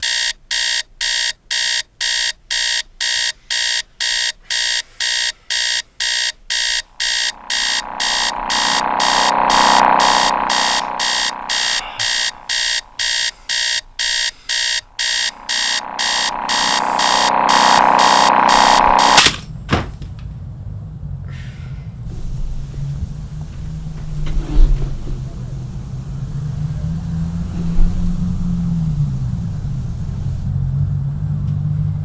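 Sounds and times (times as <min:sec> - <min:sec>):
electronic alarm beeping: 0:00.0 - 0:19.4
low drone: 0:06.6 - 0:19.2.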